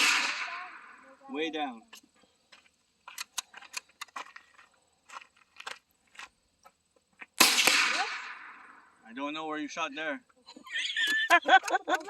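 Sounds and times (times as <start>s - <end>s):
rifle shot with echo: 0.0s - 1.0s, 7.4s - 8.9s.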